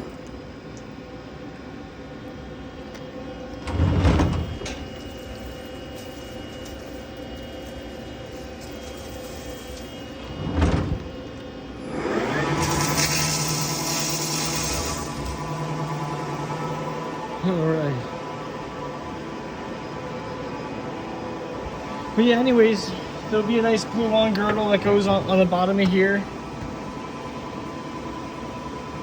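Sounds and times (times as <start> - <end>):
cnc machine humming: 0.6 - 29.0
hiss: 12.6 - 15.2.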